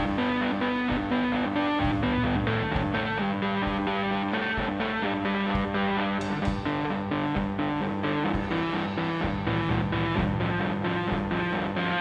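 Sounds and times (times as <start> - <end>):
drums: 0.0 - 12.0
electric guitar: 0.0 - 12.0
kick drum thumping: 1.8 - 4.9, 5.5 - 11.4.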